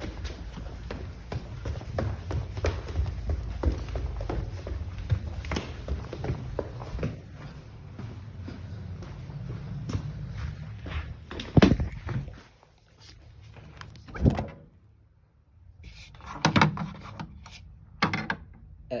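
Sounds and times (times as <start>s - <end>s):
refrigerator door opening and shutting: 14.0s - 14.8s.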